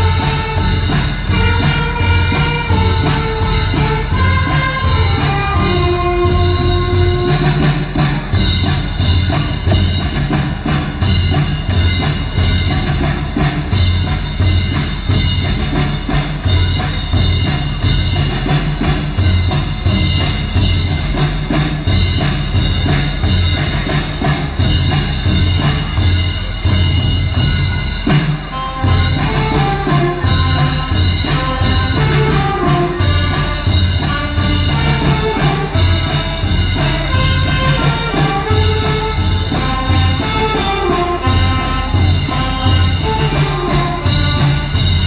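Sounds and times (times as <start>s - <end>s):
held horn notes: 0.0s - 7.8s
brass band playing: 0.0s - 45.0s
drums and percussion: 0.0s - 45.0s.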